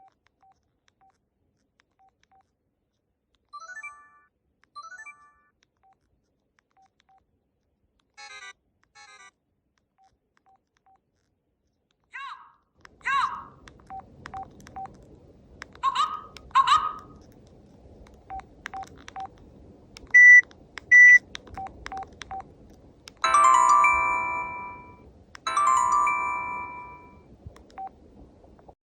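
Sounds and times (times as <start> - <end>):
phone key beeps: 18.3 - 19.3, 20.2 - 22.4, 23.2 - 27.2
high beeps: 20.2 - 21.2, 23.2 - 27.2
ringing chime-like tones: 23.2 - 27.2.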